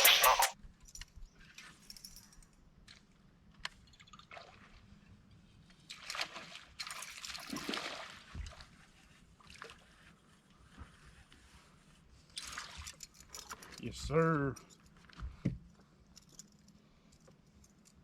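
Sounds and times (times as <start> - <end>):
water splashing and trickling: 3.8 - 10.3, 12.3 - 13.9.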